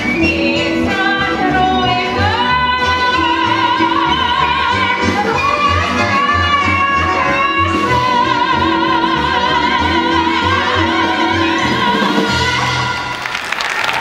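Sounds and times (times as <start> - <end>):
applause: 13.0 - 14.0.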